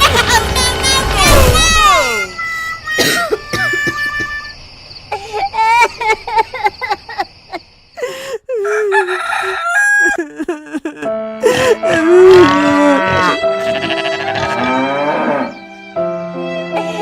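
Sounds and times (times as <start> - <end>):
cow mooing: 11.9 - 15.6
farm animals calling: 11.9 - 15.6.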